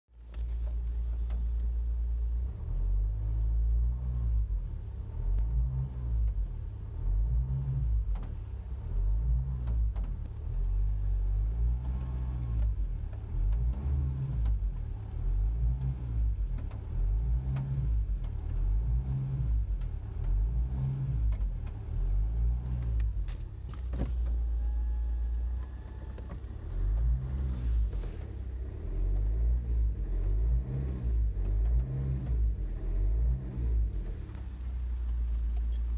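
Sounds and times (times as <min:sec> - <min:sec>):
low hum inside car cabin: 0:00.1 - 0:35.9
diesel engine running: 0:21.4 - 0:35.9.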